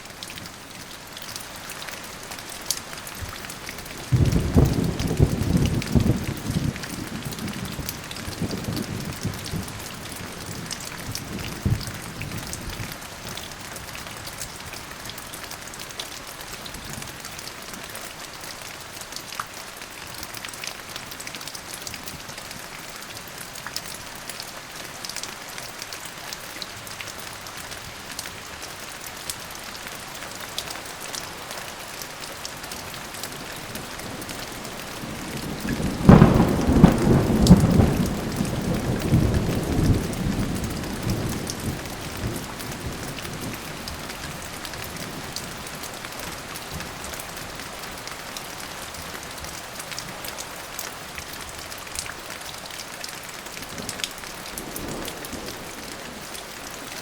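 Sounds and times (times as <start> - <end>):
steady rain falling: 0.0 - 57.0
thunder clap rumbling: 4.1 - 9.8, 35.0 - 43.6.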